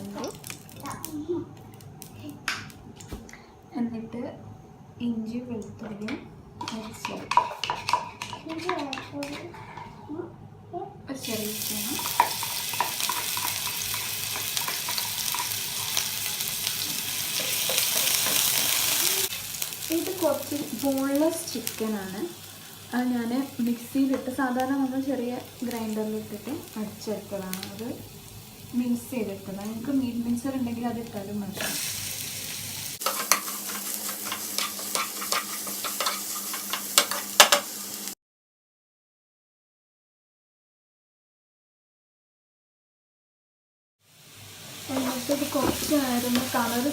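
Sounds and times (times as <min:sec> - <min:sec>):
food sizzling in hot oil: 0:00.0 - 0:01.2, 0:11.2 - 0:38.2, 0:44.0 - 0:46.9
spoon scraping a pan: 0:06.6 - 0:10.2, 0:11.6 - 0:19.1, 0:33.0 - 0:37.8, 0:44.9 - 0:46.7.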